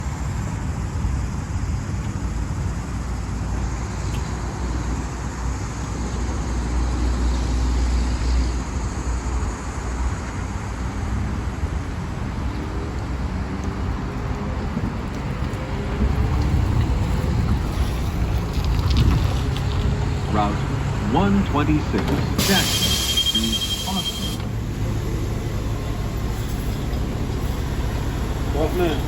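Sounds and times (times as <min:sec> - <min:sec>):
bus engine and road rumble: 0:00.0 - 0:29.0
rising transmission tones: 0:19.8 - 0:29.0.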